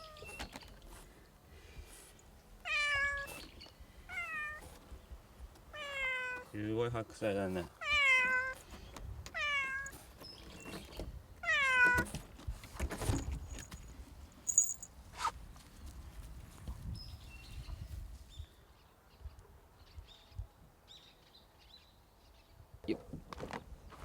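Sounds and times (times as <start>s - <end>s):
cat meowing: 2.6s - 3.4s, 4.1s - 4.6s, 5.7s - 6.5s, 7.8s - 8.6s, 9.3s - 10.0s, 11.4s - 12.1s.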